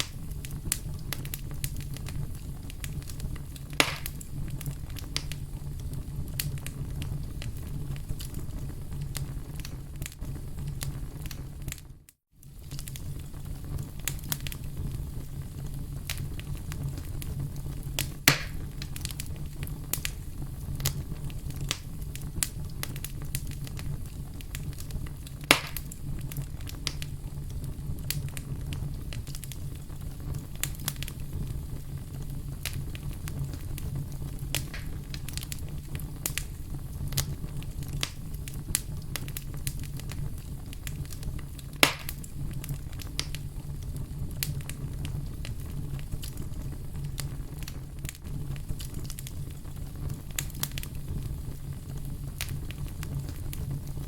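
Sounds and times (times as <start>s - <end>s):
loud fire pops: 0.0s - 54.0s
wood fire crackling: 0.0s - 54.0s
low steady rumble: 12.6s - 54.0s.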